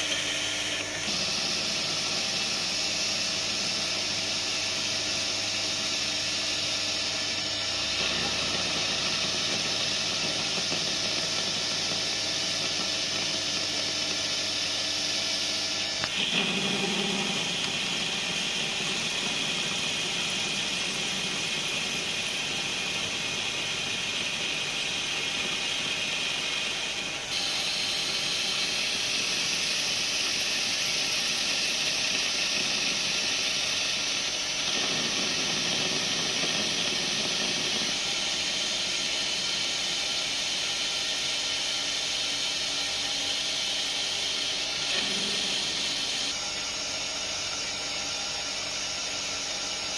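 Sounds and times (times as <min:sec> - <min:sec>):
lathe motor whine: 0:00.0 - 0:49.9
cutting hiss: 0:06.6 - 0:46.4.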